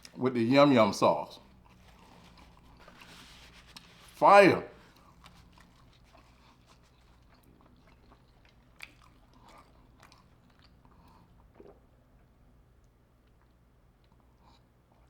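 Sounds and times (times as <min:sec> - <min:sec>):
crunchy food chewing: 0:01.4 - 0:04.2, 0:04.8 - 0:12.2.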